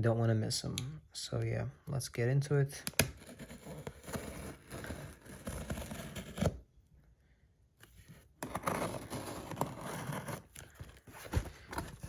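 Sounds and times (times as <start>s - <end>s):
package being handled: 8.4s - 12.0s.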